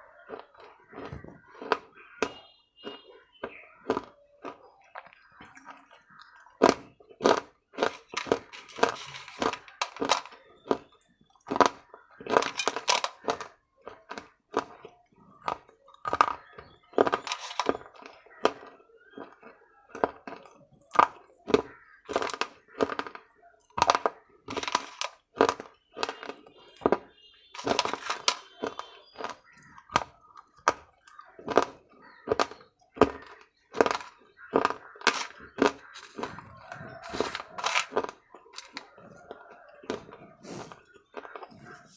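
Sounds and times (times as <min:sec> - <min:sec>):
crunchy chewing: 0:00.0 - 0:41.9.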